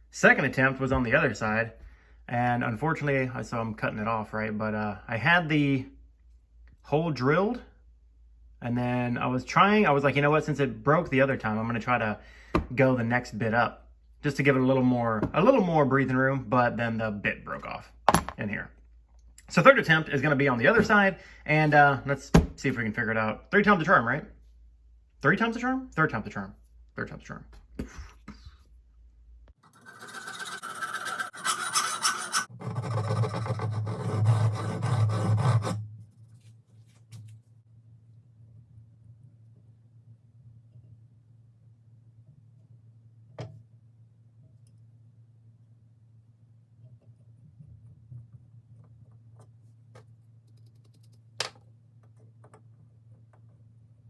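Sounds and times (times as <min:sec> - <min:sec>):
steel scraping on lathe: 0:29.6 - 0:35.8
low steady hum: 0:31.6 - 0:54.0.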